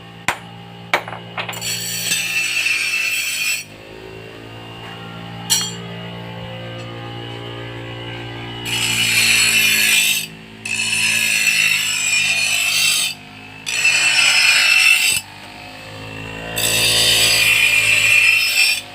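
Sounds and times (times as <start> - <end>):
power grinder on steel: 0.2 - 18.9.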